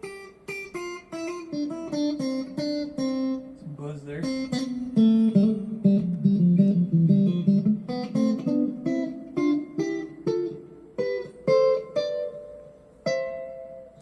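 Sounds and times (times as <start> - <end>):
clean electric guitar notes: 0.0 - 14.0.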